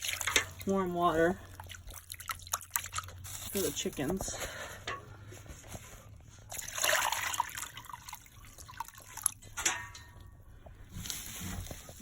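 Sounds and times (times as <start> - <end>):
water pouring and splashing: 0.0 - 4.3, 6.5 - 10.0.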